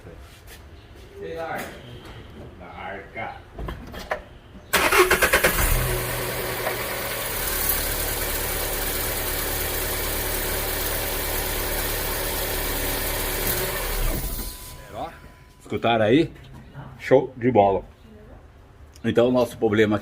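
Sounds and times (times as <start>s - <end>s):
car engine starting and idling: 4.7s - 15.0s.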